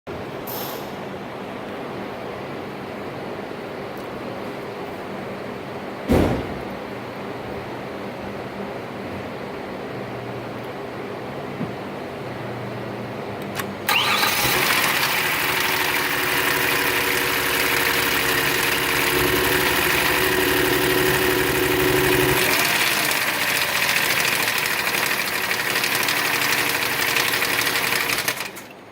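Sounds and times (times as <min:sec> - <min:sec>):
car engine starting: 0:13.6 - 0:24.7
engine knocking rhythm: 0:14.1 - 0:28.6.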